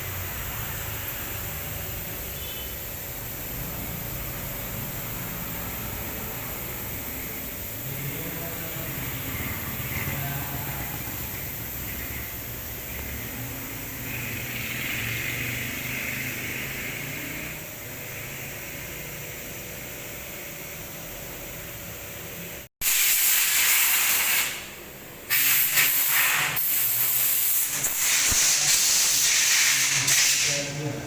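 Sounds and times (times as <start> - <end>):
loud spraying hiss: 0.0 - 17.6, 22.8 - 31.0
milling machine humming: 0.0 - 22.6.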